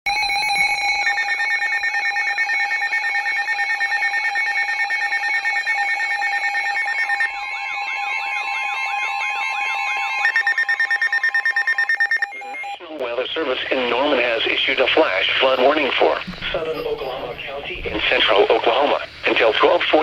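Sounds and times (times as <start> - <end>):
electronic alarm beeping rapidly: 0.1 - 12.8, 13.7 - 20.0
steady warning tone: 0.1 - 20.0
warbling warning sweep: 0.3 - 20.0.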